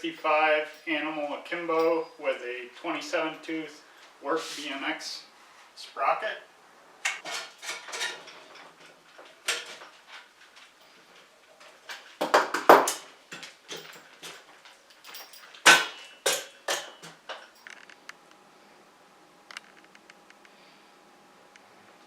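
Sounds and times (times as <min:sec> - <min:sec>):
metal bike parts and tools clinking: 0:00.0 - 0:03.4, 0:07.1 - 0:18.0.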